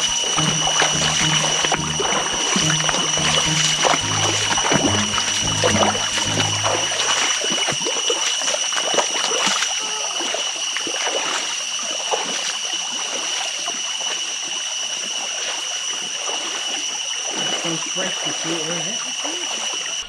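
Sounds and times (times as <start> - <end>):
background music: 0.0 - 7.5
steady high-pitched whine: 0.0 - 7.6.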